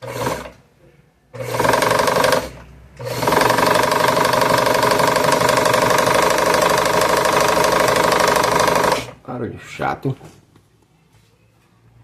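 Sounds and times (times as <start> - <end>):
sewing machine clattering: 0.0 - 0.6, 1.4 - 9.2.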